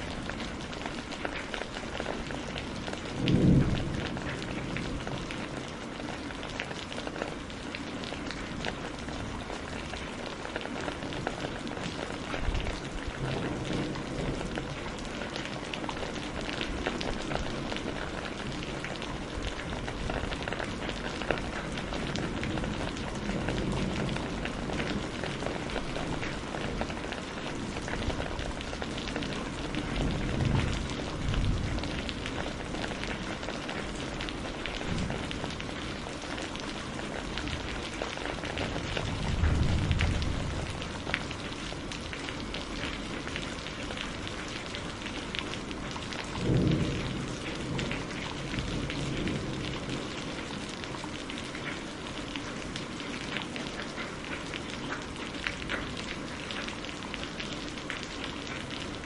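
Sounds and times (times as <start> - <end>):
steady rain hiss: 0.0 - 59.0
thunder rolling: 3.2 - 5.7, 38.6 - 41.5.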